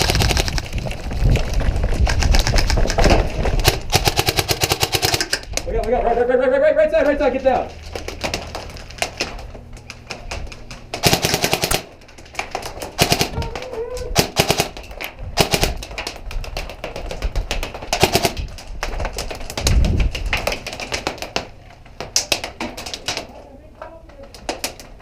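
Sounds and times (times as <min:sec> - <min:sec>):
airsoft gun rapid snapping shots: 0:00.0 - 0:00.7, 0:03.6 - 0:05.5, 0:11.0 - 0:11.9, 0:13.0 - 0:13.4, 0:14.2 - 0:14.8, 0:15.4 - 0:15.9, 0:16.5 - 0:18.5.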